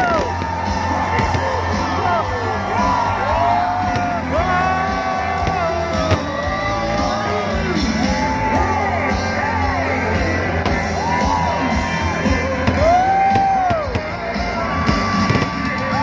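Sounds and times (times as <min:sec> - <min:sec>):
bass line: 0:00.0 - 0:16.0
loud rock music: 0:00.0 - 0:16.0.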